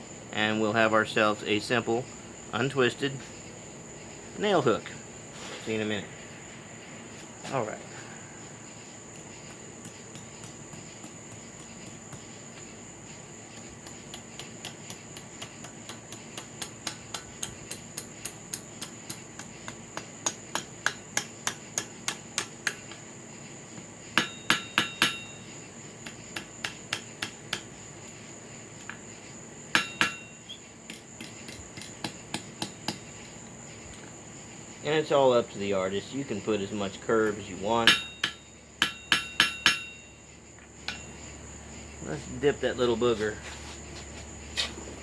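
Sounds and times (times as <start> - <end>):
crickets chirring: 0.0 - 45.0
hammer striking nail on anvil: 13.8 - 23.0, 24.2 - 25.4, 26.0 - 27.7, 29.7 - 30.3, 30.9 - 33.0, 37.8 - 40.1.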